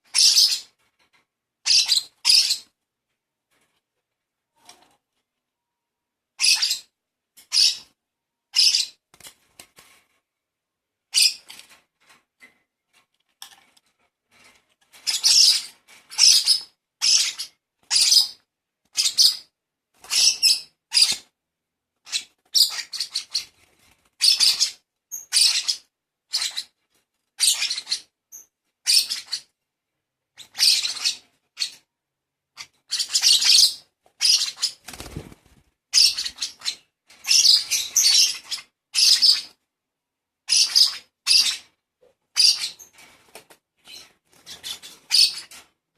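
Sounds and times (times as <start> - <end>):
baby lovebird begging calls: 0.1 - 0.7, 1.6 - 2.6, 6.4 - 6.9, 8.5 - 9.0, 24.2 - 26.7, 27.4 - 28.1, 30.4 - 31.8, 32.6 - 34.8, 35.9 - 39.6, 40.5 - 41.7.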